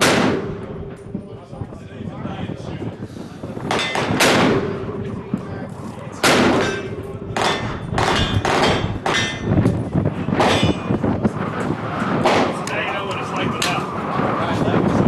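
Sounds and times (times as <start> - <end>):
fainter gunshots: 0.0 - 0.6, 3.7 - 4.8, 6.2 - 6.8
rifle shots with ringing tail: 0.0 - 0.9, 3.7 - 5.2, 6.2 - 9.6
range noise: 0.0 - 15.0.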